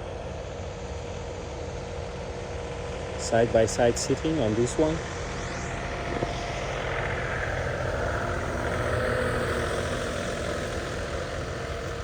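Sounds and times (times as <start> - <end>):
vehicle engine passing by: 5.5 - 12.0.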